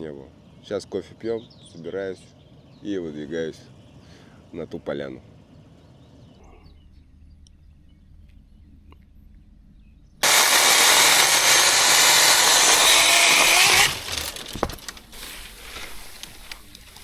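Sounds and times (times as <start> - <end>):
loud rasping cutting noise: 10.2 - 15.0
twigs snapping and rustling: 12.1 - 17.0.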